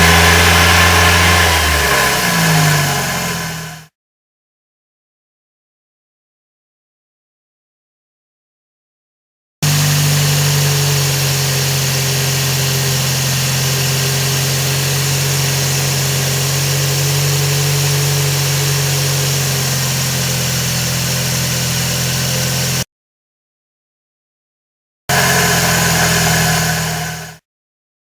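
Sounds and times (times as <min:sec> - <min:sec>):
car engine running: 0:00.0 - 0:03.9, 0:09.6 - 0:22.8, 0:25.1 - 0:27.4
water pump grinding: 0:00.0 - 0:03.9, 0:09.6 - 0:22.8, 0:25.1 - 0:27.4.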